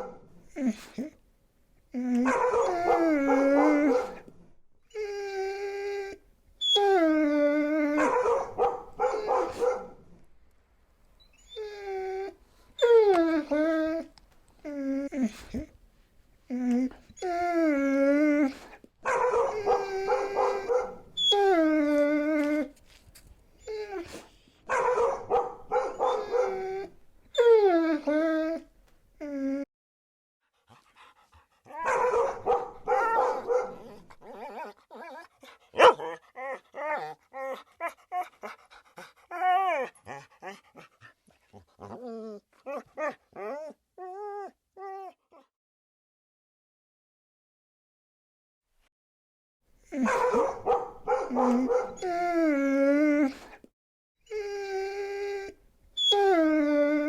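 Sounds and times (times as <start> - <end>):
dog howling: 2.1 - 4.2, 5.0 - 9.7, 17.2 - 22.8, 24.8 - 28.6, 31.7 - 38.3, 50.0 - 53.5, 54.4 - 57.0.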